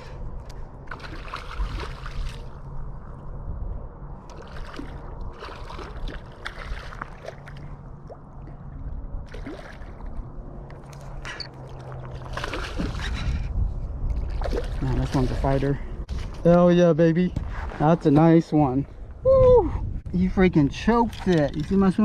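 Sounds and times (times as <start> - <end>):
water sloshing and splashing: 0.0 - 3.4, 4.2 - 16.8, 20.8 - 22.0
steady low rumble: 0.0 - 22.0.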